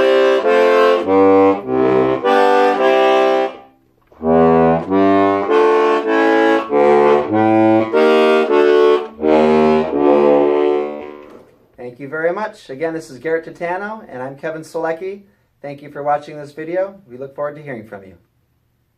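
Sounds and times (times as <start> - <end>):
button accordion single notes: 0.0 - 11.5.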